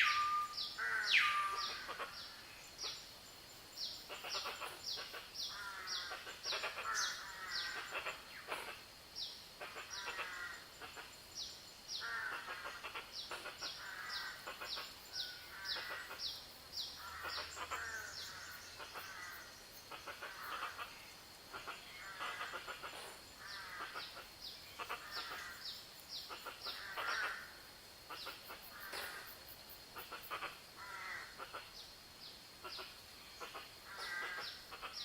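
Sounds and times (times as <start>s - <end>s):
bird whistling: 0.0s - 0.6s
faint high whine: 0.0s - 2.8s
bird chattering: 4.0s - 8.8s, 12.2s - 25.6s.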